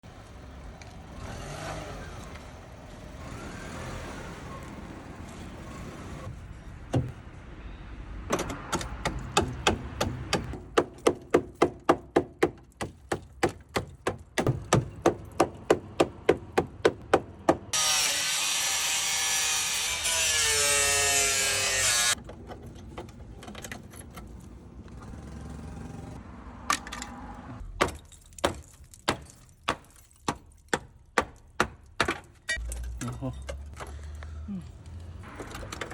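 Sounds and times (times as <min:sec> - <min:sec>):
loud power tool running: 0:17.7 - 0:22.2.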